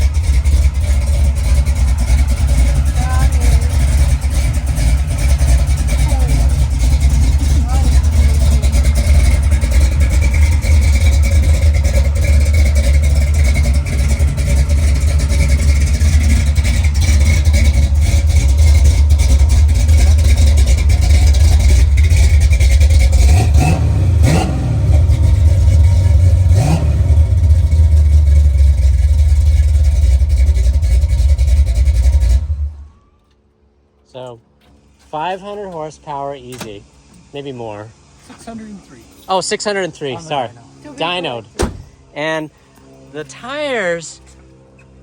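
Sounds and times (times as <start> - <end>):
engine revving: 0.0 - 32.9
vee eight engine idling lumpy: 0.0 - 33.0.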